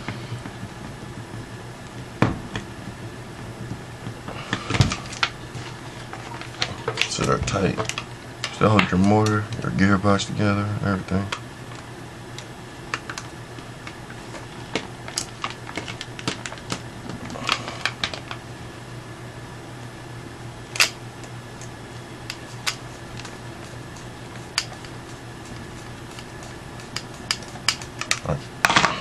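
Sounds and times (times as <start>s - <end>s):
steady low hum: 0.0s - 29.0s.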